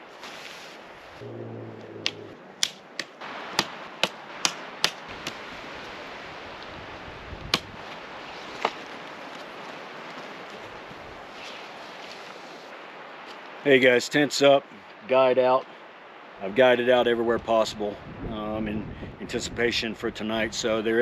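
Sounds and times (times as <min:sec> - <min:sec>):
tent stakes being hammered: 0:02.0 - 0:05.5, 0:07.5 - 0:07.8
wind noise: 0:04.2 - 0:11.9, 0:17.2 - 0:20.8.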